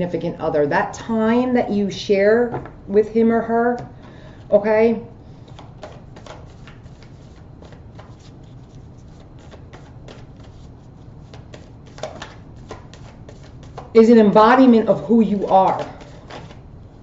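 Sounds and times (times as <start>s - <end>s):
cards being shuffled: 5.5s - 14.0s, 15.2s - 16.6s.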